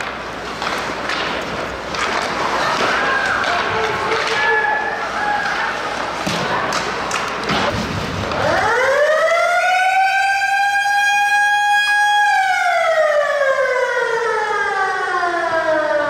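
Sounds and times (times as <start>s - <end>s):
knocks and clatter of hockey play: 0.0s - 8.5s
motor-driven siren wailing: 8.4s - 16.0s.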